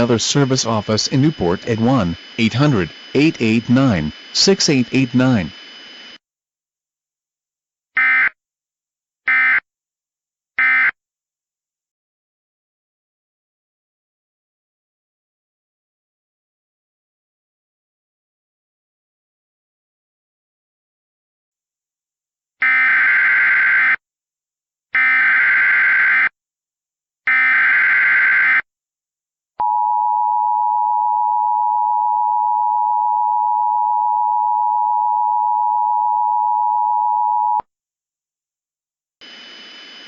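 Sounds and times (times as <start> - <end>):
digital data bursts: 0.0 - 5.7.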